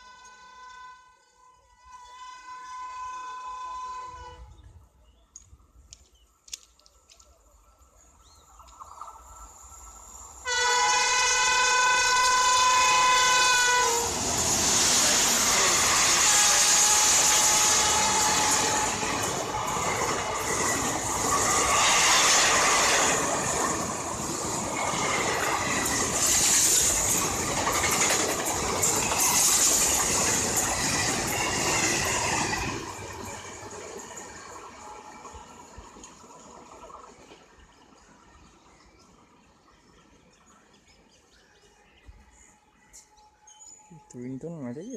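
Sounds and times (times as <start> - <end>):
train horn blast: 0.0 - 4.7, 10.4 - 14.2, 15.7 - 20.1
train wheels clattering over rails: 14.1 - 38.1.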